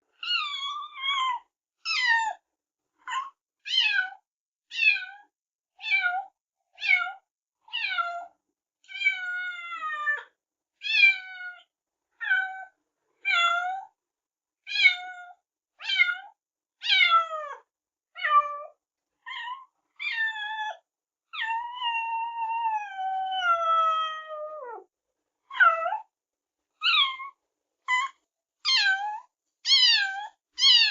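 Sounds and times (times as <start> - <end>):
kittens meowing: 26.8 - 27.3, 27.9 - 30.9.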